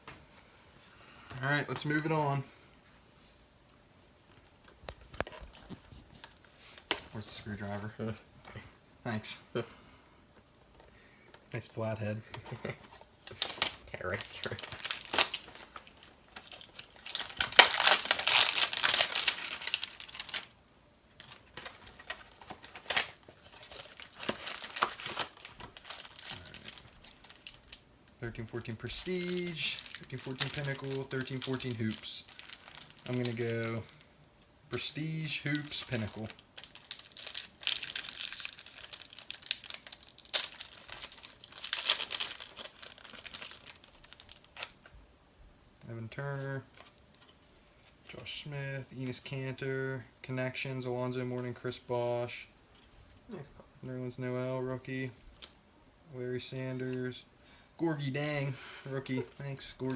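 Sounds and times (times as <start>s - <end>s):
plastic wrap tearing and crinkling: 13.2s - 34.0s, 34.7s - 44.9s.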